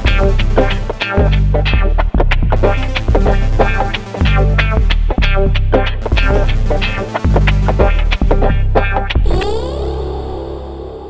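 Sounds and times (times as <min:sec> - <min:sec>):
guitar-driven music with heavy bass: 0:00.0 - 0:10.7.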